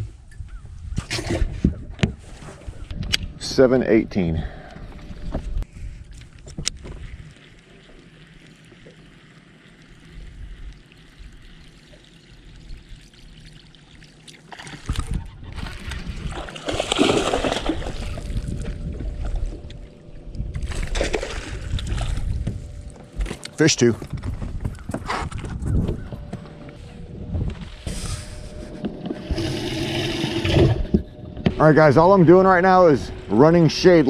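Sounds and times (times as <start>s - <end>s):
water splashing and trickling: 5.7s - 23.6s.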